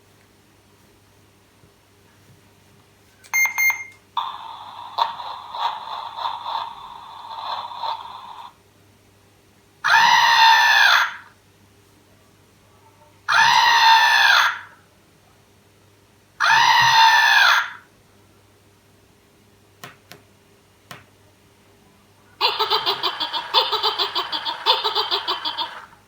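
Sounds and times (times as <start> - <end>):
fast pulsing toy laugh: 4.2 - 8.5, 22.4 - 26.0
toy voice box screams: 9.9 - 11.3, 16.4 - 17.8.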